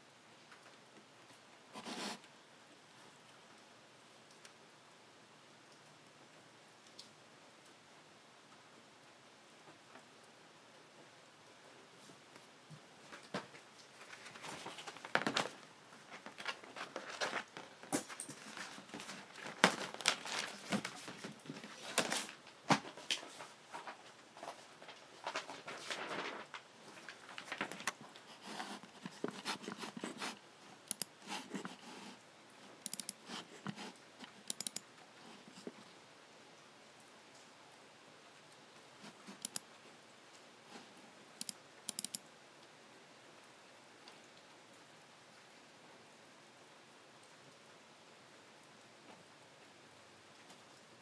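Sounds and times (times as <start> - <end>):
computer mouse clicking: 30.8 - 31.8, 32.8 - 34.8, 39.3 - 39.7, 41.4 - 42.2.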